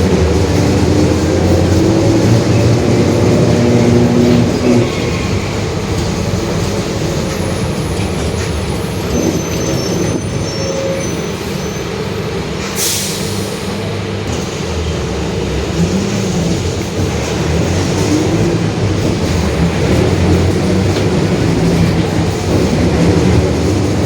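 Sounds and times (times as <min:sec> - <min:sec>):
bus diesel engine droning: 0:00.0 - 0:24.0
compressed air hiss: 0:12.8 - 0:13.8.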